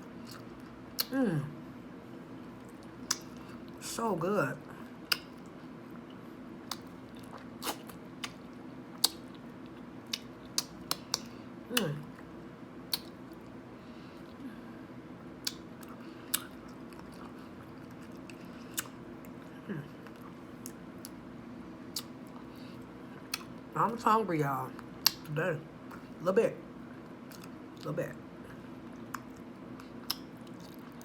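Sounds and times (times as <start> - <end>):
wet chewing: 2.5 - 3.8, 6.6 - 11.3, 28.9 - 31.0
mouth clicks and smacks: 5.1 - 5.5, 9.0 - 9.2, 10.1 - 11.3, 12.9 - 13.2, 30.0 - 30.8.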